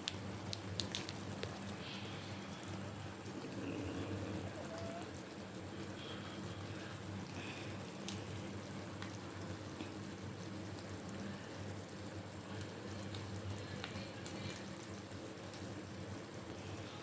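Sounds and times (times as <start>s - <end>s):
small clicks: 0.0s - 1.7s
water boiling in a pot: 0.0s - 17.0s.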